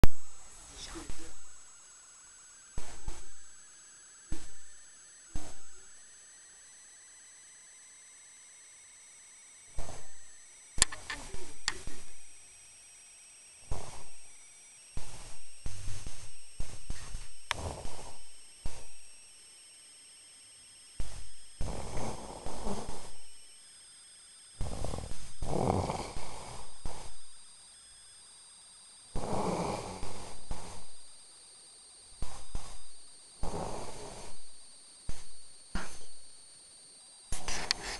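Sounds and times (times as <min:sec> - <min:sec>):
man snoring loudly: 0:13.7 - 0:14.2, 0:15.1 - 0:18.9, 0:21.0 - 0:23.2, 0:24.6 - 0:27.3, 0:29.1 - 0:31.0, 0:32.2 - 0:34.6.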